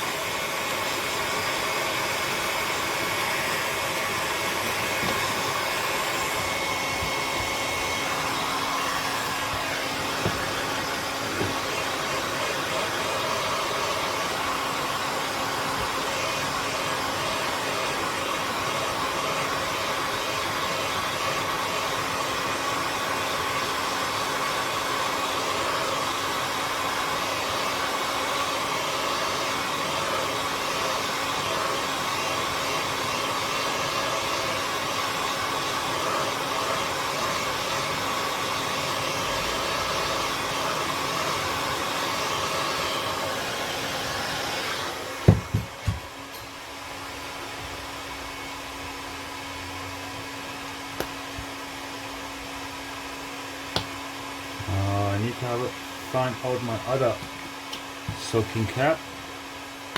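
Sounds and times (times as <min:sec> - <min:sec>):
hot air gun blowing: 0:00.0 - 0:46.5.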